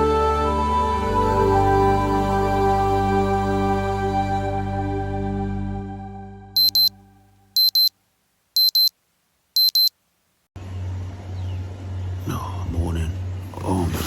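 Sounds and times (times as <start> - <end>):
background music: 0.0 - 6.6
digital alarm beeping: 6.6 - 6.9, 7.6 - 7.9, 8.6 - 8.9, 9.6 - 9.9.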